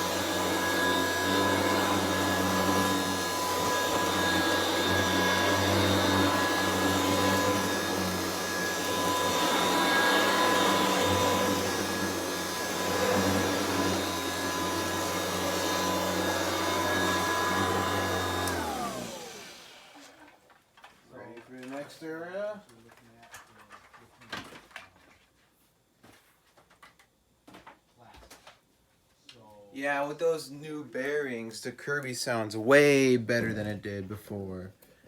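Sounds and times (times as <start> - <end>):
vacuum cleaner motor whine: 0.0 - 20.4.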